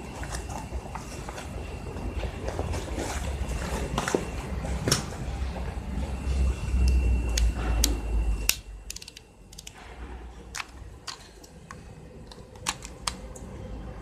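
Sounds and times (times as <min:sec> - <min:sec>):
thin high whine: 0:00.0 - 0:10.5.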